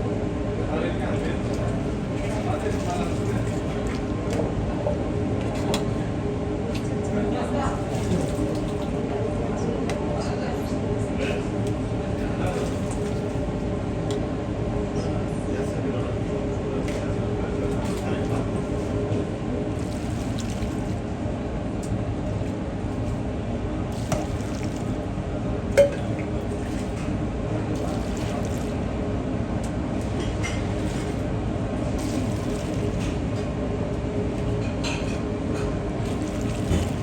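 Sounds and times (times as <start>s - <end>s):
kitchen background hum: 0.0s - 37.0s
dishes clinking: 25.8s - 26.3s.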